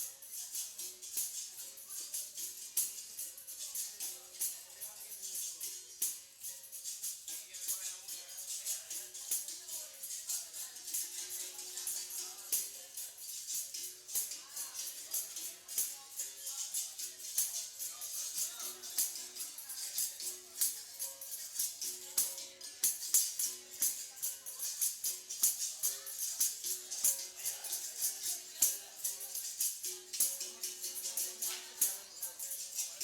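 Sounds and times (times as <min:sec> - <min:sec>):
shaker rattles: 0:00.0 - 0:33.0
tambourine jingles: 0:00.0 - 0:33.0.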